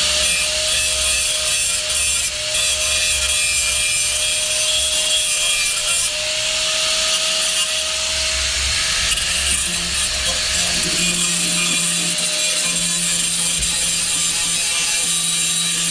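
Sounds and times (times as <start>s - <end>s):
grinder motor whine: 7.9s - 15.9s
harsh scraping on metal: 8.7s - 15.9s.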